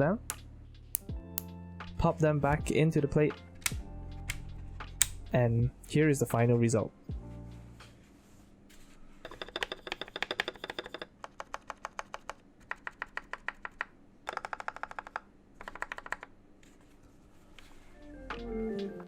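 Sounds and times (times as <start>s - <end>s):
keyboard keys clicking rapidly: 11.4s - 16.3s.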